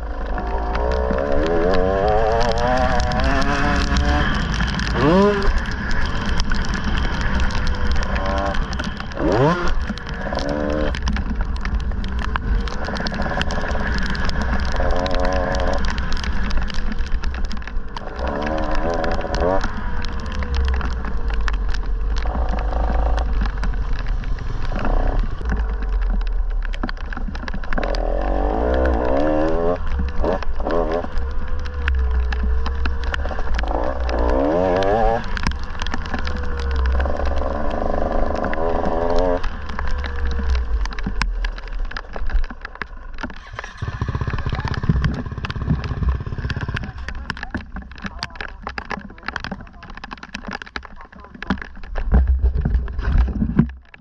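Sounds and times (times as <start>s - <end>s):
sharp clicks and knocks: 0.0s - 54.0s
dirt bike engine revving: 0.6s - 11.0s, 33.2s - 35.3s, 43.4s - 47.1s
heavy low rumble: 39.6s - 50.2s.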